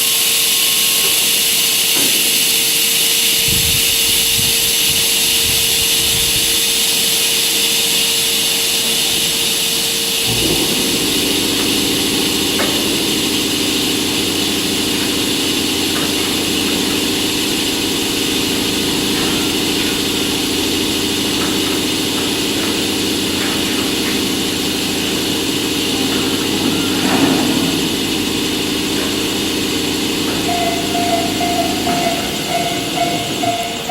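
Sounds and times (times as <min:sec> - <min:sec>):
high-pitched hiss: 0:00.0 - 0:33.9
locomotive equipment humming: 0:08.7 - 0:33.9.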